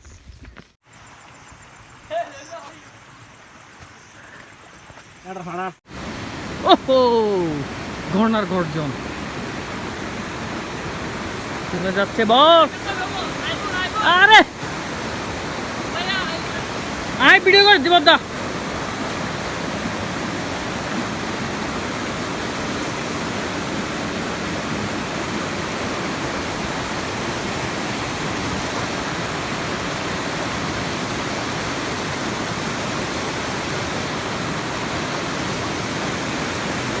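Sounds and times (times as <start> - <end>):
waterfall roaring: 5.9 - 37.0.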